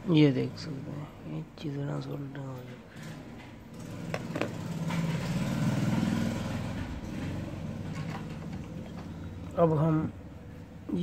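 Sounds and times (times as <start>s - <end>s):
vehicle engine passing by: 3.8s - 10.2s.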